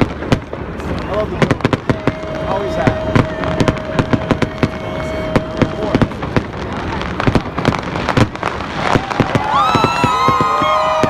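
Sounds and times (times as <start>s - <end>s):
fireworks bangs and crackles: 0.0s - 11.0s.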